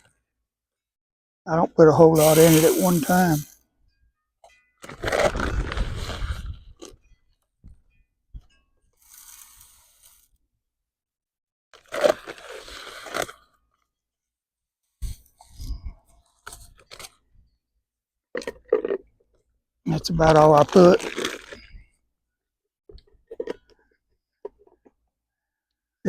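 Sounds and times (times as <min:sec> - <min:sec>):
birdseed rattling pours: 0:02.2 - 0:03.5.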